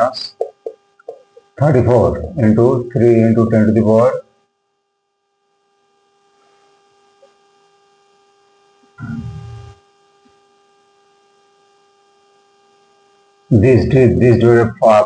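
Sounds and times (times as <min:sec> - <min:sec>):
low-pitched noise: 0:00.0 - 0:04.2, 0:09.0 - 0:09.8
electrical hum: 0:00.0 - 0:15.0.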